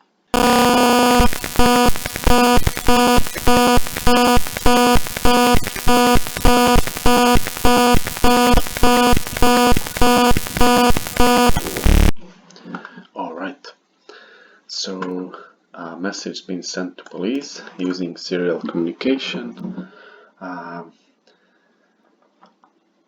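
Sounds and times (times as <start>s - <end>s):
pulsing alarm buzzer: 0.4s - 12.2s.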